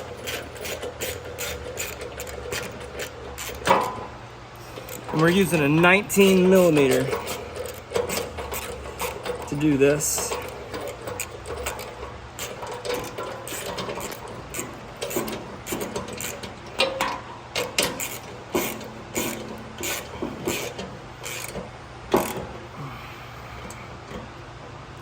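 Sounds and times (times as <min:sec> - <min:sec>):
wrench clicking on metal: 0:04.8 - 0:21.6.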